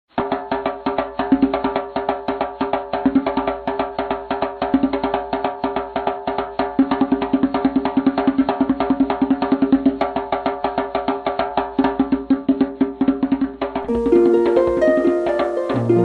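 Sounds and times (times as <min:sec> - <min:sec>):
kalimba being plucked: 0:13.8 - 0:16.0.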